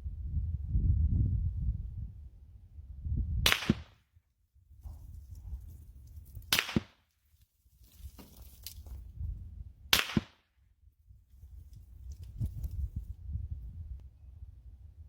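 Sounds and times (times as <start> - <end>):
low wind rumble: 0.0 - 6.6, 8.8 - 10.0, 10.6 - 15.0
distant muzzle blast: 3.4 - 4.0
sharp bullet crack: 3.4 - 4.0, 6.5 - 7.1, 9.9 - 10.5.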